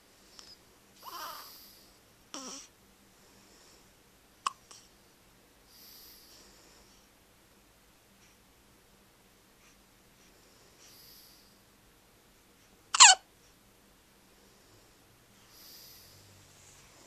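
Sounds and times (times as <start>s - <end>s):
soft breathing: 0.0s - 7.2s, 8.0s - 8.6s, 9.4s - 11.8s, 14.2s - 17.0s
high-pitched hiccup: 12.9s - 13.3s.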